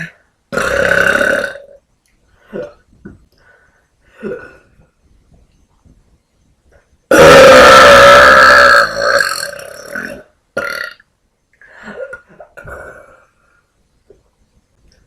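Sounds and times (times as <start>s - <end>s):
woman burping: 7.1s - 11.0s.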